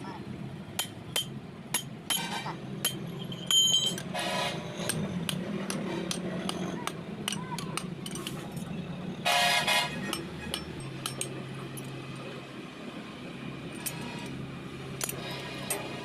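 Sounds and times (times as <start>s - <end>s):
sharp metallic taps: 4.8s - 8.4s.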